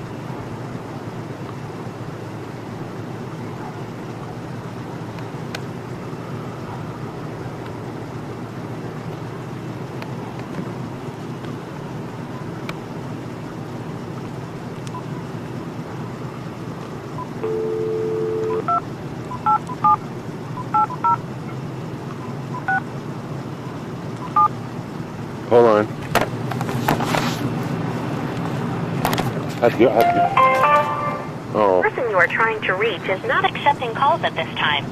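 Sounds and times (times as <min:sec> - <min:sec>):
low background hum: 0:00.0 - 0:34.9
touch-tone keypad beeps: 0:17.2 - 0:20.0, 0:20.6 - 0:21.2, 0:22.6 - 0:22.8, 0:24.2 - 0:24.5
telephone dial tone: 0:17.4 - 0:20.0.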